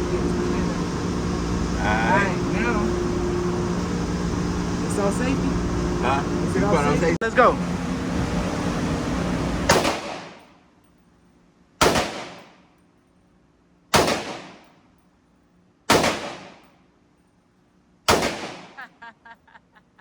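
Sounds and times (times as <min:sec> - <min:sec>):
rifle shots with echo: 0:09.7 - 0:10.5, 0:11.8 - 0:12.6, 0:13.9 - 0:14.7, 0:15.9 - 0:16.7, 0:18.1 - 0:18.8.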